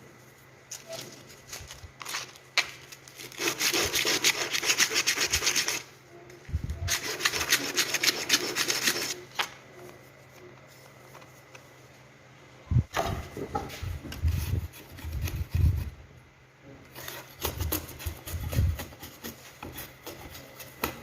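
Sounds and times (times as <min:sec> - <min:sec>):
hand tool working wood: 0:03.2 - 0:05.8, 0:06.7 - 0:09.2, 0:16.9 - 0:21.0.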